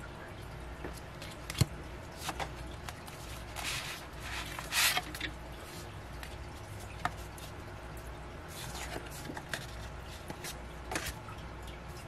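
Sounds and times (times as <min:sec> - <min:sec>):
paper and plastic rustling: 0:01.2 - 0:07.6, 0:08.5 - 0:11.2.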